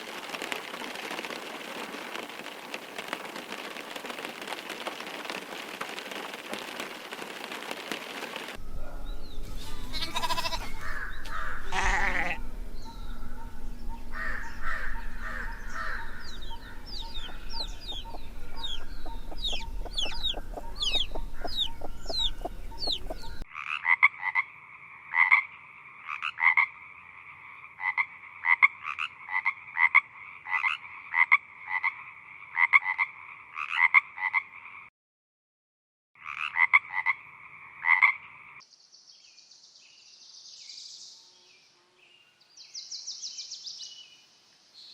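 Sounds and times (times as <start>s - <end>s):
birds chirping: 0.3s - 23.5s
chickens: 14.7s - 23.4s
frog croaking: 23.5s - 34.9s, 36.2s - 38.6s.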